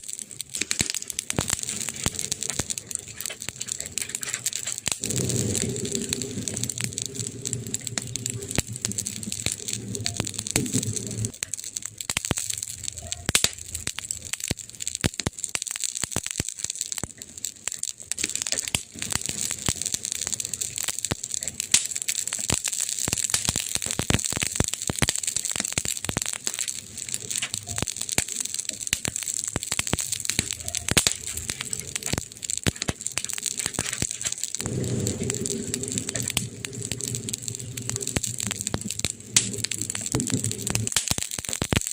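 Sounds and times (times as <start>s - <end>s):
wood fire crackling and popping: 0.0s - 41.9s
low rumble: 1.4s - 11.4s, 33.4s - 40.9s.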